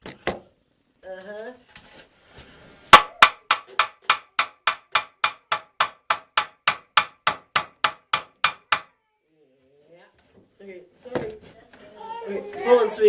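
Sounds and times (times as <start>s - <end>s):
hammer strikes on wood: 2.9s - 8.9s.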